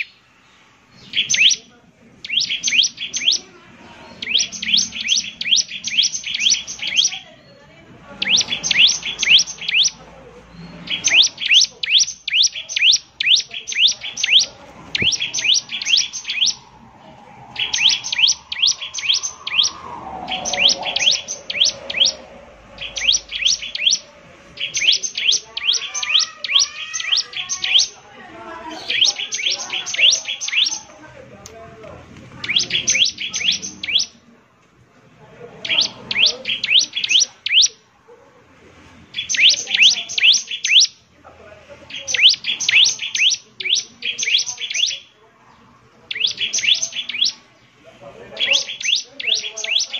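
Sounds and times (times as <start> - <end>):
bird singing high chirps: 0.0 - 28.0, 28.6 - 30.9, 32.4 - 34.2, 35.6 - 37.8, 39.1 - 41.0, 41.9 - 45.1, 46.1 - 47.4, 48.4 - 49.9
faint low bird warble: 12.7 - 27.8.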